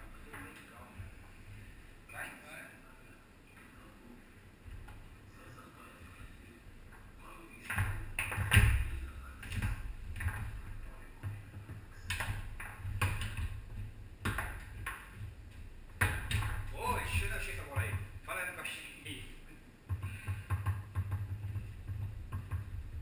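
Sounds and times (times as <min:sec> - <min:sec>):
foosball ball clacking: 0:11.2 - 0:15.2.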